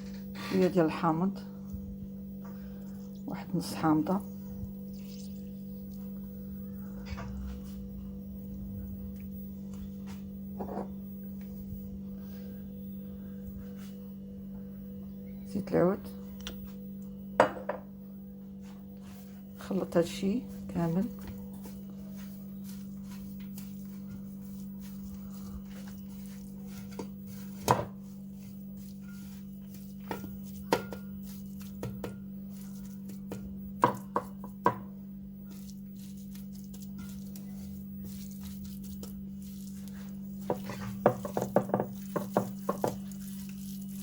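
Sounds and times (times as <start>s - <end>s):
steady low hum: 0.0s - 44.0s
spoon knocking and scraping a bowl: 10.6s - 11.0s, 17.4s - 17.9s, 25.6s - 34.9s, 39.9s - 44.0s.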